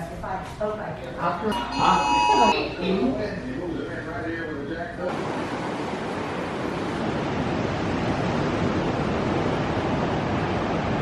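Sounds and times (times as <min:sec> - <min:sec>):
ocean surf: 0:05.1 - 0:11.0.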